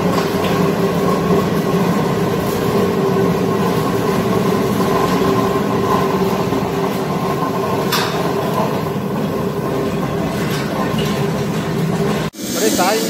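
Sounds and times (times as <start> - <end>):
wet grinder motor humming: 0.0 - 13.0.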